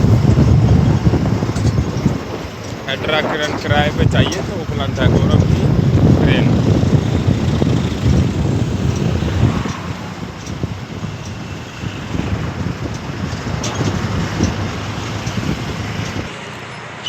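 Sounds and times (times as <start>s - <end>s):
wind rushing over microphone: 0.0s - 16.4s
road and traffic noise: 0.0s - 17.0s.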